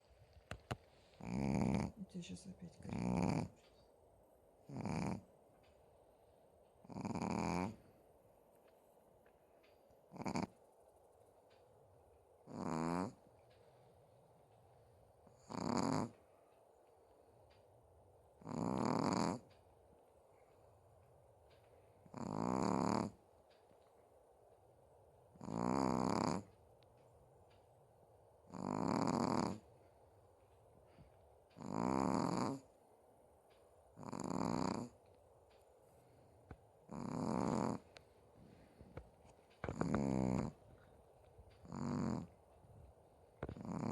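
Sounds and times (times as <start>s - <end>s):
dog snoring: 1.1s - 2.0s, 2.8s - 3.7s, 4.6s - 5.3s, 6.8s - 8.0s, 10.1s - 10.6s, 12.4s - 13.2s, 15.3s - 16.3s, 18.4s - 19.6s, 22.0s - 23.2s, 25.3s - 26.6s, 28.5s - 29.7s, 31.6s - 32.7s, 34.0s - 35.0s, 36.8s - 38.8s, 39.6s - 40.9s, 41.6s - 42.4s, 43.4s - 43.9s.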